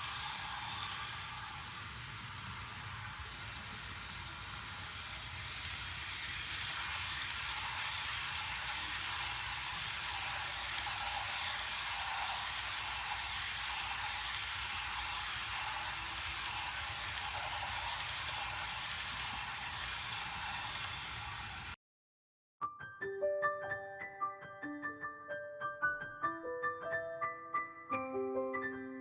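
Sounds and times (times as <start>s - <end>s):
model train hiss: 0.0s - 21.8s.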